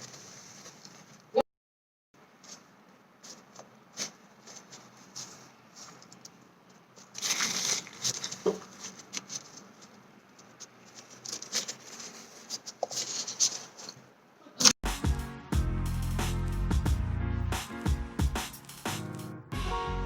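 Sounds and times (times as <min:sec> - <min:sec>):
paper packaging crinkling: 0:02.4 - 0:14.0
music with steady beat: 0:14.8 - 0:20.0.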